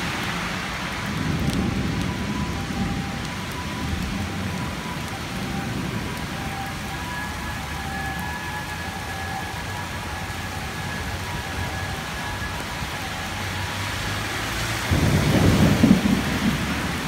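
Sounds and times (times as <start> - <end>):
heavy rain pouring: 0.0 - 17.0
low rumble of thunder: 0.9 - 9.4, 14.8 - 17.0.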